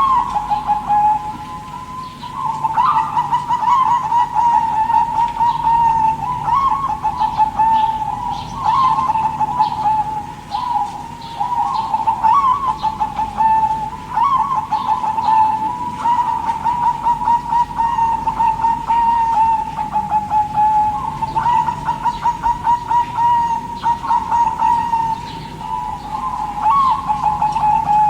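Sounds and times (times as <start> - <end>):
dove cooing: 0.0 - 28.0.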